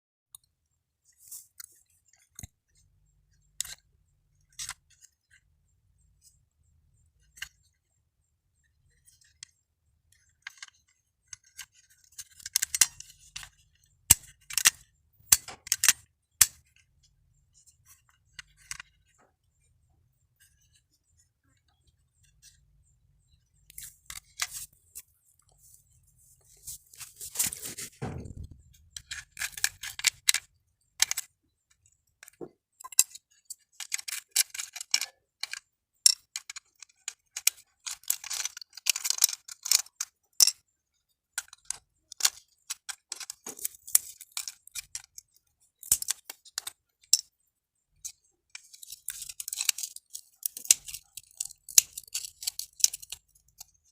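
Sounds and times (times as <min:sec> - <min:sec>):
small plastic and metal parts clicking: 0:01.3 - 0:05.5, 0:07.2 - 0:07.8, 0:08.7 - 0:16.9, 0:17.5 - 0:19.3, 0:23.3 - 0:25.6, 0:26.5 - 0:53.9
scrape: 0:25.5 - 0:28.0.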